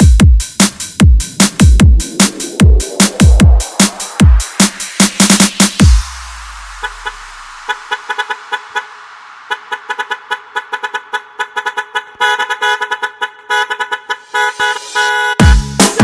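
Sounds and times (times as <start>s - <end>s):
electronic music: 0.0s - 12.0s, 14.1s - 16.0s
truck air horn blasts: 9.5s - 15.5s.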